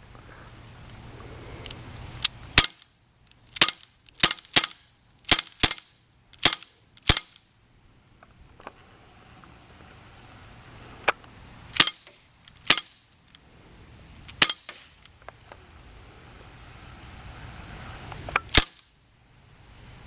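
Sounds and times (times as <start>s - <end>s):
faint clicks: 0.8s - 2.4s
airsoft pistol shots: 3.6s - 7.4s, 11.7s - 13.0s.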